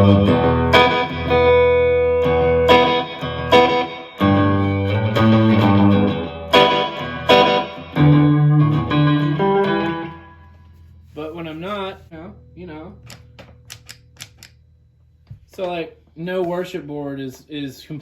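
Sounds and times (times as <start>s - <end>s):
electric guitar with slapback delay: 0.0s - 10.5s.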